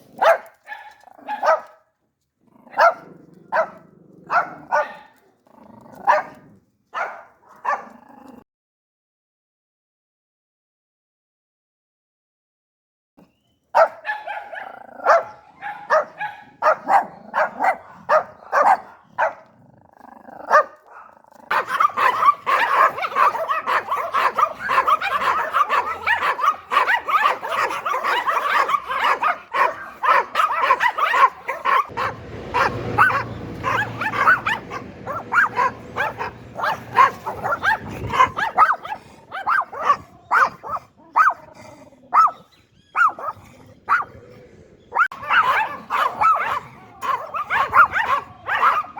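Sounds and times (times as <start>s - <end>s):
small dog yapping: 13.8s - 19.4s, 20.5s - 41.5s, 42.1s - 44.1s, 44.9s - 48.9s.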